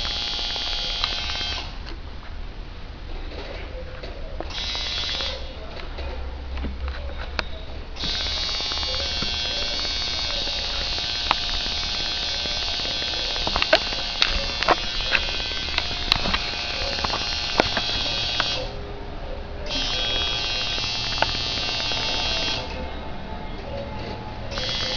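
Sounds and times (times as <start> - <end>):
tattoo machine buzzing: 0.0 - 1.8, 4.5 - 5.5, 8.0 - 18.8, 19.7 - 22.8, 24.5 - 24.9
sharp clicks: 0.0 - 2.0, 4.4 - 6.0, 7.3 - 18.8, 19.7 - 22.8, 23.9 - 24.9.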